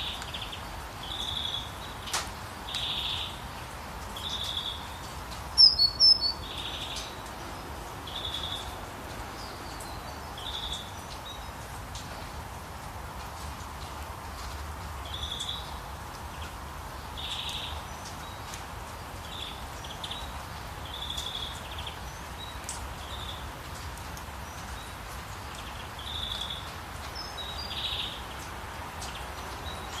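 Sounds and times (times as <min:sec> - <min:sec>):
flowing water rushing: 0:03.4 - 0:16.9
birds buzzy high calls: 0:05.6 - 0:06.8.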